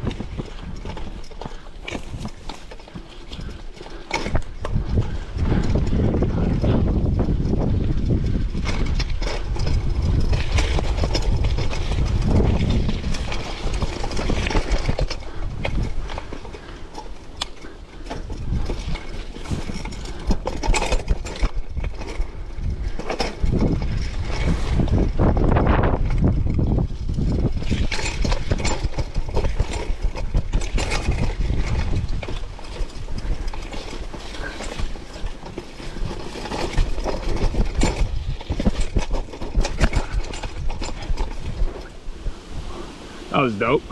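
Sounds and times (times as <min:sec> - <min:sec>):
bike rattling over rough trail: 0:00.0 - 0:43.9
tyres on dirt: 0:00.0 - 0:43.9
heavy low rumble: 0:04.7 - 0:10.6.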